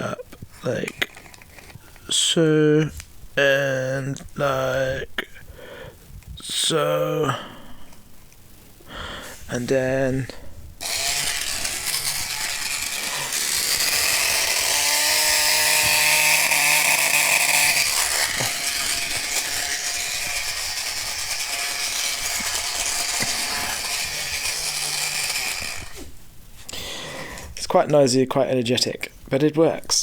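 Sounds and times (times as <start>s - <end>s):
small electric motor spinning gears: 10.8s - 26.2s.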